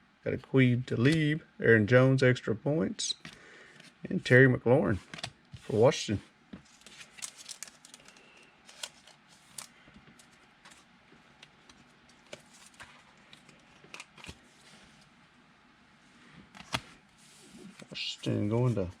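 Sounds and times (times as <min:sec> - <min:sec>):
trading cards being handled: 0:06.6 - 0:15.1.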